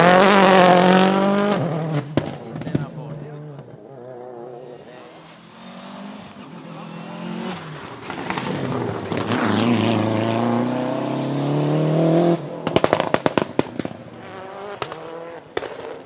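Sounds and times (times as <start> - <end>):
car engine revving: 0.0 - 16.0
exhaust bangs and pops: 1.3 - 3.8, 7.6 - 10.0, 12.5 - 16.0.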